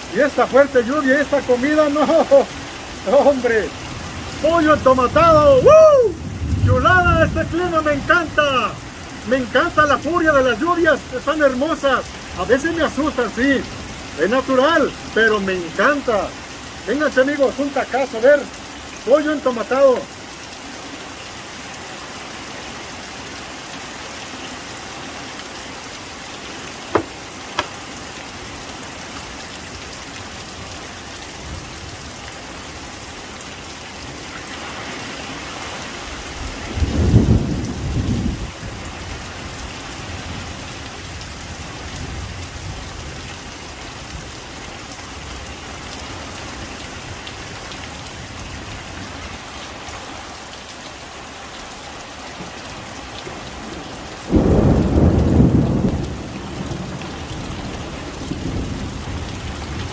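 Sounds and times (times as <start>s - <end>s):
heavy rain falling: 0.0s - 59.9s
thunder rumble: 3.9s - 8.8s, 36.6s - 38.8s, 54.3s - 59.9s.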